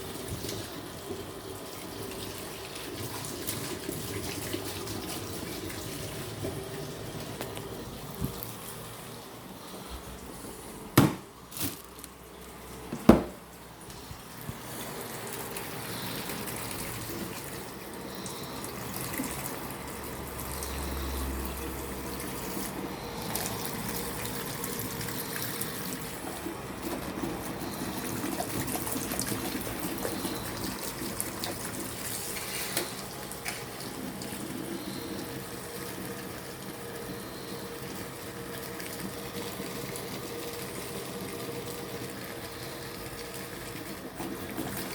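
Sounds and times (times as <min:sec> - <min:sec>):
tap water running into sink: 0:13.0 - 0:44.9.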